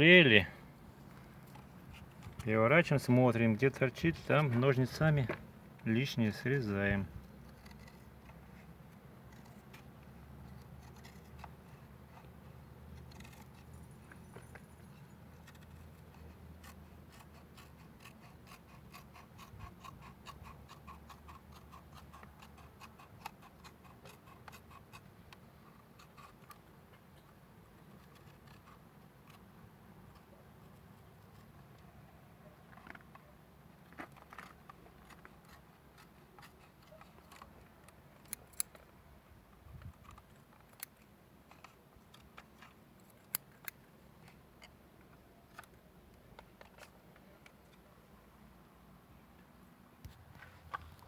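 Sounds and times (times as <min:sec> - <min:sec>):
scissors snipping tape: 0:34.5 - 0:38.8.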